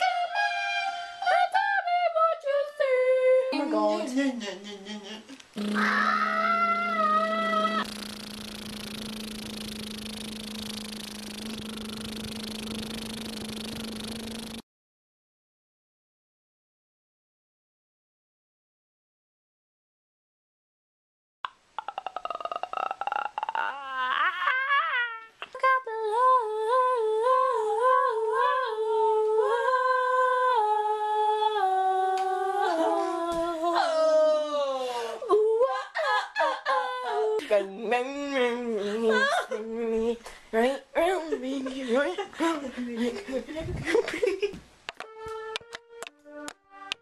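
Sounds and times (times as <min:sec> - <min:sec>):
person humming high: 0:03.4 - 0:14.2, 0:21.8 - 0:25.5, 0:27.2 - 0:35.8, 0:45.0 - 0:45.8.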